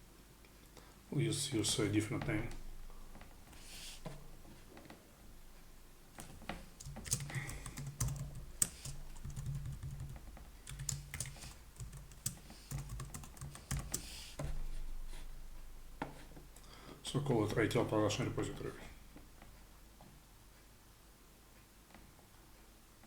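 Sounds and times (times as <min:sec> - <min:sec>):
computer keyboard typing: 0:06.2 - 0:14.2.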